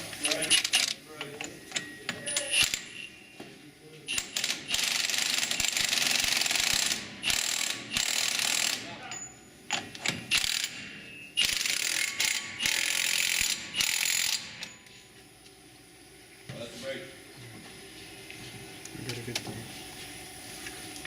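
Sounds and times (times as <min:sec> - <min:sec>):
ratchet wrench clicking: 0:04.1 - 0:08.8, 0:09.7 - 0:10.8, 0:11.4 - 0:14.7.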